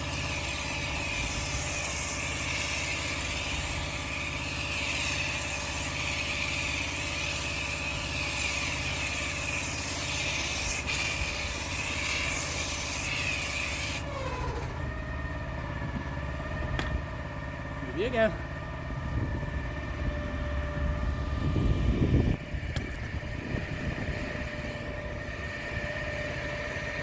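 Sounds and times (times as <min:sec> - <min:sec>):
water jet hissing on paving: 0:00.0 - 0:14.7
pressure washer engine running: 0:00.0 - 0:27.0.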